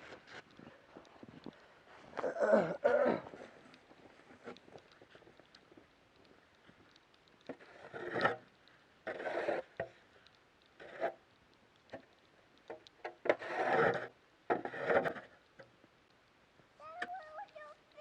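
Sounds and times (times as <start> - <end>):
wood scraping against wood: 7.4 - 10.0, 10.8 - 11.2, 12.7 - 15.4.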